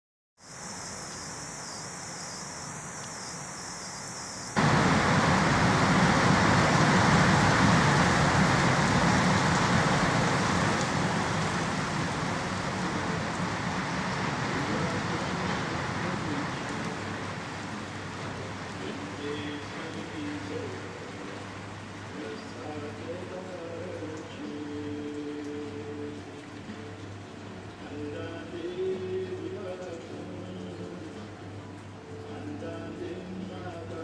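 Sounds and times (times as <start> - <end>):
rain hissing: 0.4 - 26.2.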